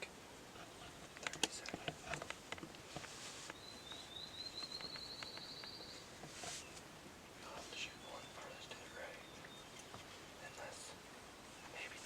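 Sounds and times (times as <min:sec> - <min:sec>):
light clicks and rustles: 0:00.6 - 0:10.9
songbird trilling: 0:03.5 - 0:06.8, 0:07.7 - 0:10.9.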